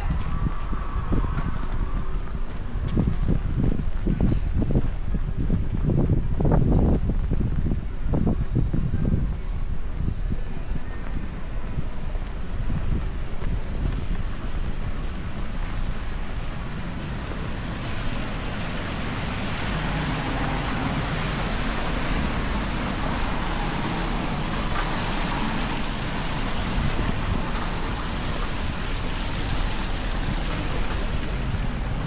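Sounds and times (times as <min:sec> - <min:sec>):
low rumble: 0:00.0 - 0:32.0
rain falling on street: 0:11.1 - 0:32.0.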